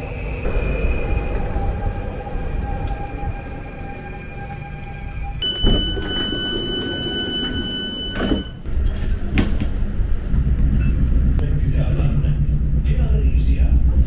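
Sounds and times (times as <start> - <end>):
train low rumble: 0.0 - 14.0
steady high electronic tone: 2.7 - 8.7.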